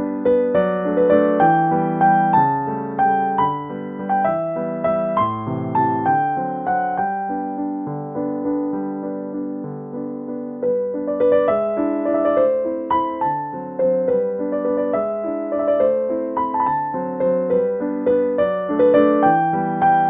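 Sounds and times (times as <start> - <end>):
gentle piano music: 0.0 - 20.0.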